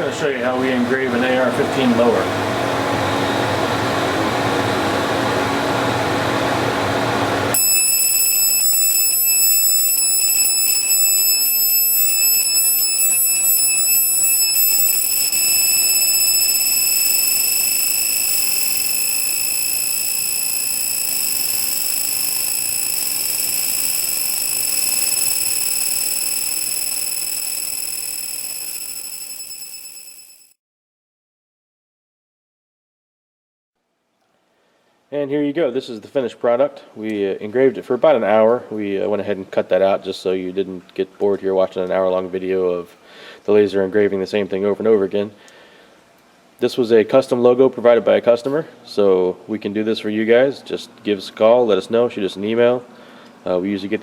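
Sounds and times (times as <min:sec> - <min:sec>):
laser engraver high-pitched whine: 0:07.5 - 0:30.5.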